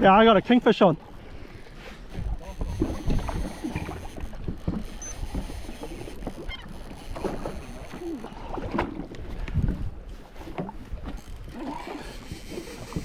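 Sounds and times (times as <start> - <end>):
water slapping against hull: 0.0 - 13.0
wind buffeting microphone: 1.0 - 13.0.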